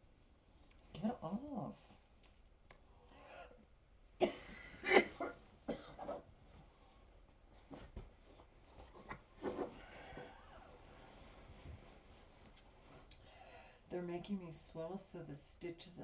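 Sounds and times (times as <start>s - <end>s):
woman speaking: 0.9s - 2.0s, 13.9s - 16.0s
woman coughing: 4.2s - 6.2s
woman breathing: 13.1s - 13.9s.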